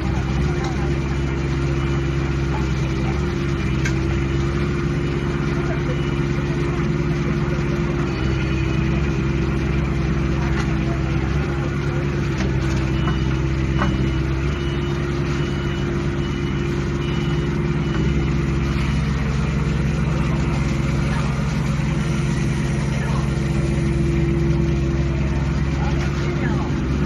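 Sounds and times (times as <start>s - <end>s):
diesel engine running steadily: 0.0s - 27.0s.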